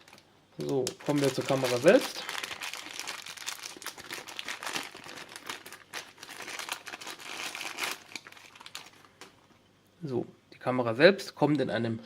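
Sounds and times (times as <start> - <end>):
plastic packaging crinkling: 0.0 - 9.4.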